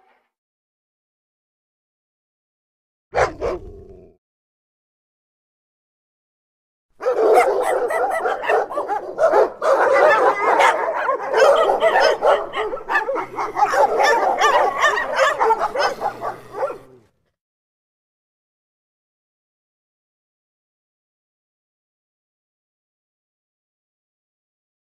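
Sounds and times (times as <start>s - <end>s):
dogs barking and yelping: 3.2s - 3.7s, 7.0s - 17.1s.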